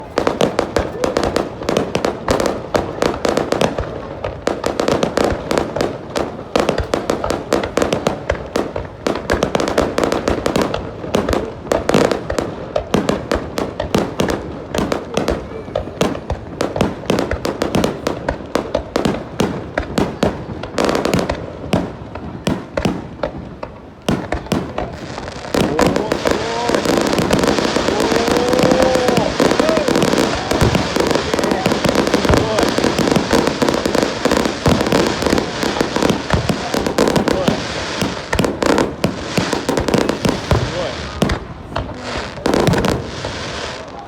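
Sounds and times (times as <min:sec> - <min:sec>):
fireworks bangs and crackling: 0:00.0 - 0:44.0.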